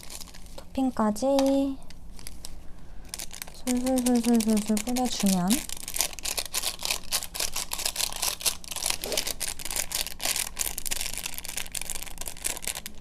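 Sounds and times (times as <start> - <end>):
seeds rattling in container: 3.1 - 13.0.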